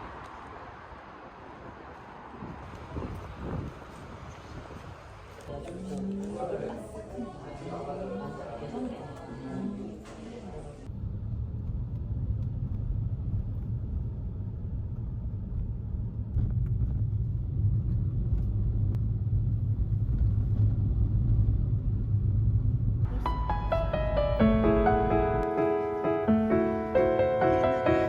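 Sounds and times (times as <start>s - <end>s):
low steady rumble: 10.9s - 25.5s
piano music: 23.1s - 28.0s.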